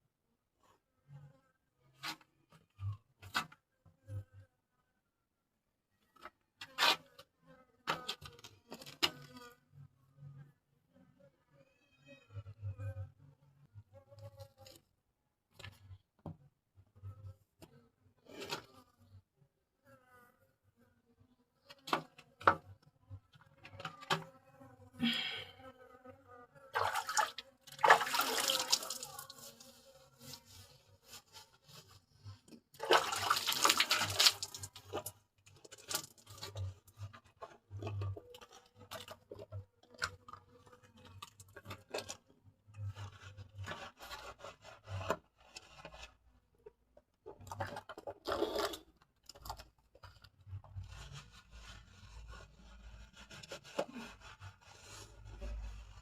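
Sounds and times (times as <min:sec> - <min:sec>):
rubbing sounds: 0:06.6 - 0:07.1, 0:26.7 - 0:39.5, 0:42.8 - 0:46.8, 0:50.4 - 0:56.0
water pouring and splashing: 0:26.8 - 0:30.6, 0:32.8 - 0:35.1.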